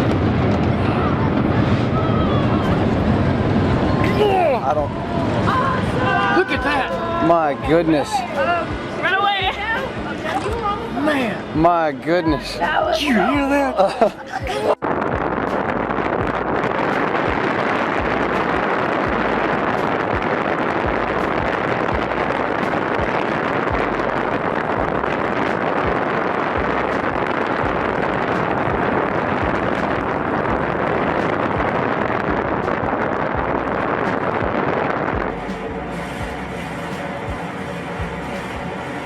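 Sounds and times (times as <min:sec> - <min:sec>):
low rumbles: 0:00.0 - 0:39.0
wind buffeting microphone: 0:00.0 - 0:39.0.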